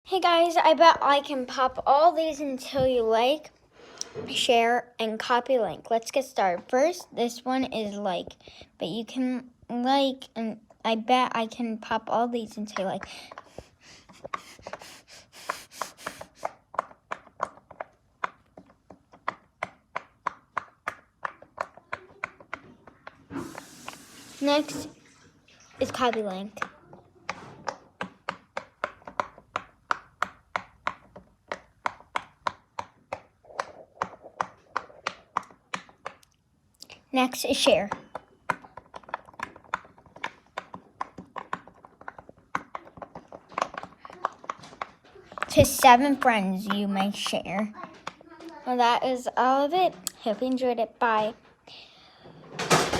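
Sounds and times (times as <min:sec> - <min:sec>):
fidget toy bubbles popping: 0:12.7 - 0:24.0, 0:25.8 - 0:48.4.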